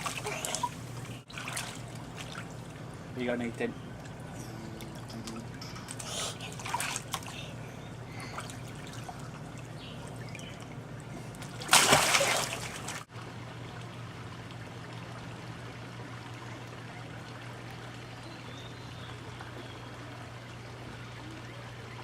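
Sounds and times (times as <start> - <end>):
water splashing in pool: 0.0 - 2.7, 4.7 - 7.5, 8.2 - 13.1
low hum: 0.0 - 22.0.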